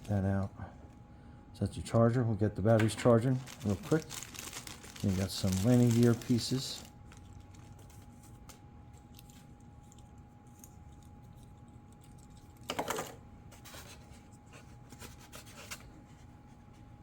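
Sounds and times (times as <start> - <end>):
packaging rustle: 3.0 - 10.1.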